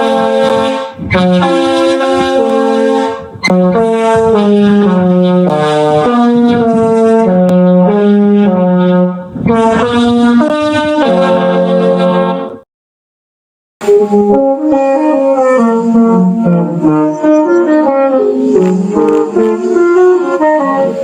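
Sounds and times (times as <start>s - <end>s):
brass-like ringtone melody: 0.0s - 12.6s.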